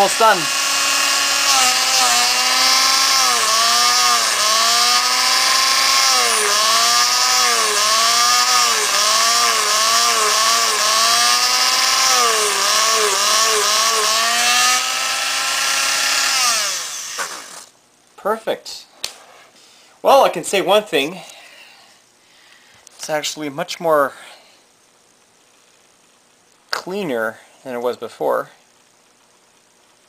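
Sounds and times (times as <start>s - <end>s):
rotary tool whining: 0.0s - 17.7s.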